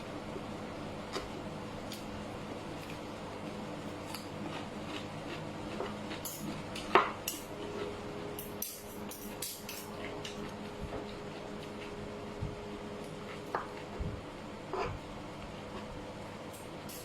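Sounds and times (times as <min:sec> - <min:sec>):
steady low hum: 0:00.0 - 0:17.0
utensils clicking on dishes: 0:08.4 - 0:10.4.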